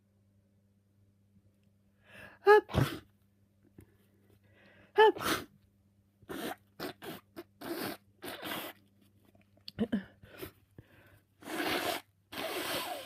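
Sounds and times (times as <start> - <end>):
person sneezing: 2.4 - 3.1, 5.0 - 5.5.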